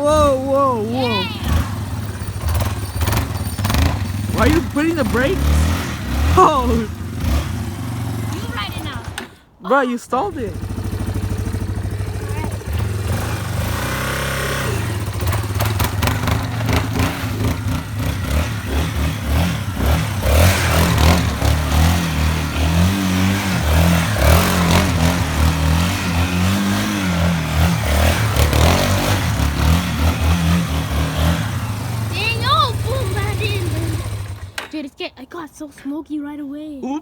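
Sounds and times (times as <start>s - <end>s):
quad engine revving: 0.0s - 9.5s, 10.2s - 34.7s.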